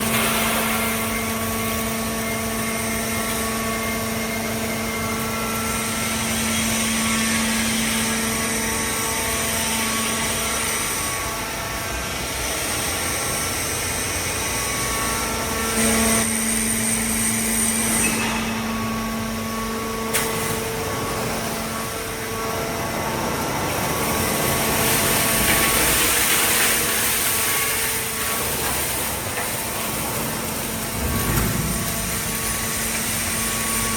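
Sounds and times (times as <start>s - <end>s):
hydraulic baler humming: 0.0s - 33.9s.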